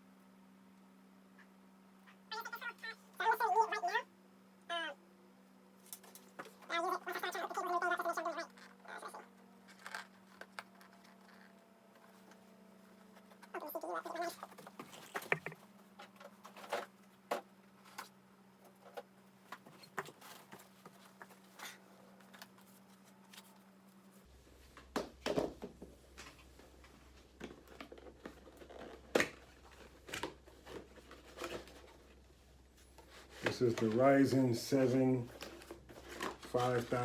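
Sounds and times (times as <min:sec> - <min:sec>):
low electrical hum: 0:00.0 - 0:37.0
hands handling packaging: 0:35.2 - 0:37.0.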